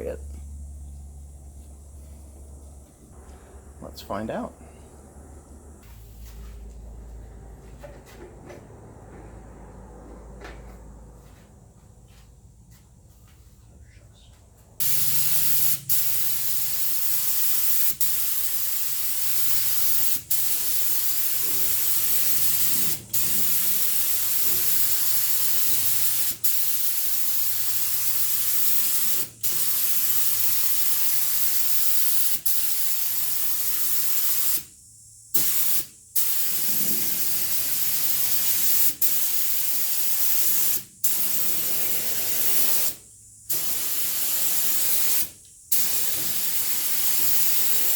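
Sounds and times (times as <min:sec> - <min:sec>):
paint spray gun hissing: 0:14.8 - 0:47.9.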